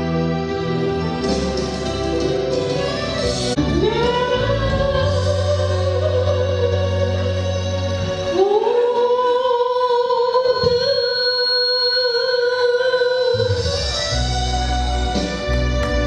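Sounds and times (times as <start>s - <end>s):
bass and accompaniment: 0.0s - 11.3s, 12.8s - 16.0s.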